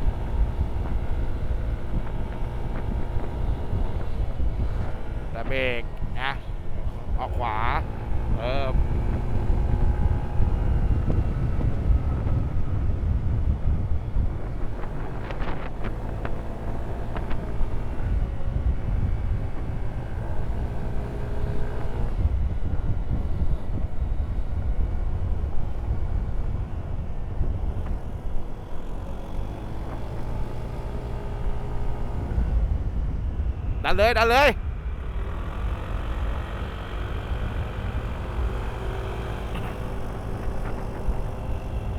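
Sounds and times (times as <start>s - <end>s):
motorcycle engine revving: 0.0s - 41.9s
wind rumble on microphone: 0.0s - 41.9s.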